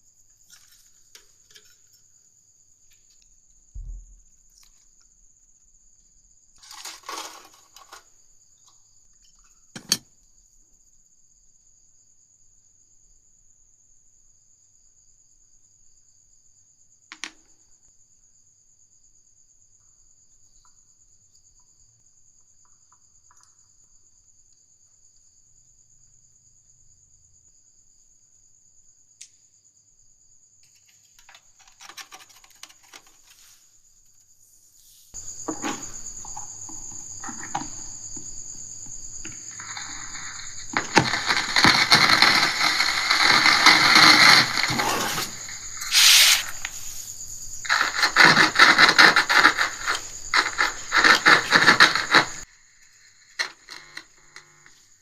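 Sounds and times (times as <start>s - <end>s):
low thump: 3.7s - 4.4s.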